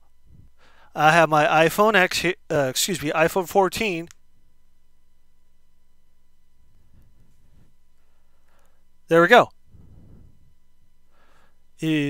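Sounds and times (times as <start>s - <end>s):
faint low rumble: 0.0s - 1.5s, 4.1s - 11.8s
faint electrical hum: 0.0s - 12.0s.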